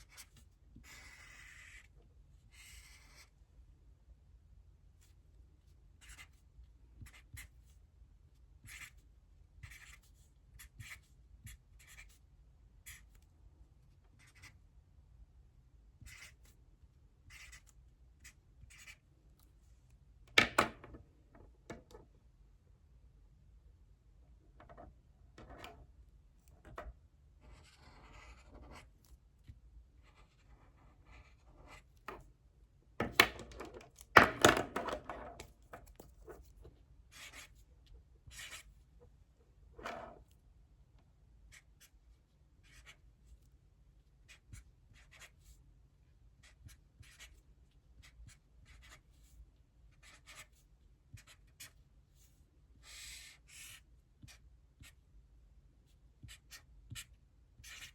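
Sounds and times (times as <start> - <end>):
pencil scratching on paper: 0.0 - 3.3, 6.0 - 6.4, 8.6 - 9.0, 9.6 - 12.2, 16.0 - 16.6, 17.3 - 19.0, 27.4 - 29.1, 30.0 - 32.0, 35.2 - 38.8, 42.6 - 43.0, 44.3 - 45.6, 46.4 - 47.4, 48.0 - 55.0, 56.2 - 57.9.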